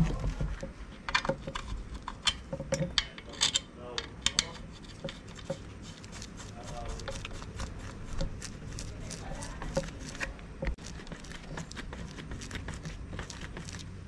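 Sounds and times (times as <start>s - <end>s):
steady low hum: 0.0s - 14.0s
hand tools clicking and tapping: 0.6s - 10.8s.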